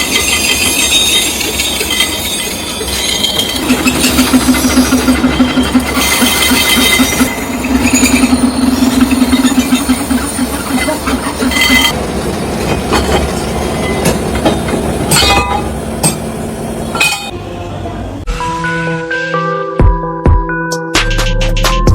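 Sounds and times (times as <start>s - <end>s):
metal clinks and knocks: 0.0s - 12.0s
rhythmic machinery clatter: 0.0s - 17.4s.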